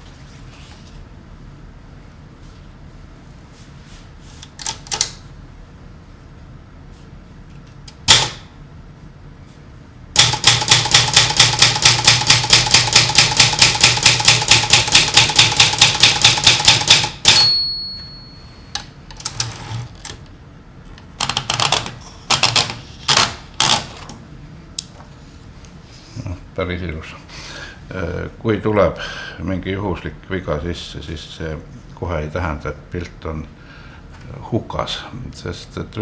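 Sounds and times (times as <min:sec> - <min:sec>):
typewriter keys striking: 0:04.6 - 0:05.2, 0:08.1 - 0:08.5, 0:10.2 - 0:17.7, 0:21.2 - 0:24.0
typewriter bell ringing: 0:10.2 - 0:18.7.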